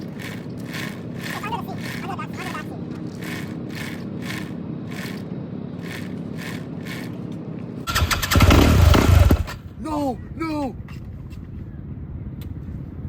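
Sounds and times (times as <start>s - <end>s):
dirt bike engine cranking: 0.0s - 9.6s.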